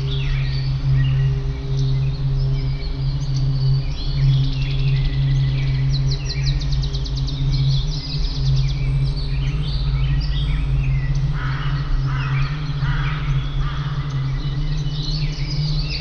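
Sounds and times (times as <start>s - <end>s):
songbirds singing and chirping: 0.0s - 16.0s
steady low drone: 0.0s - 16.0s.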